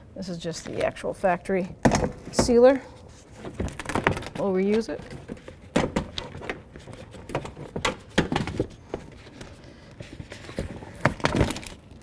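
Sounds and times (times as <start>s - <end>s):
plastic sheet crackling and tearing: 3.1s - 9.3s.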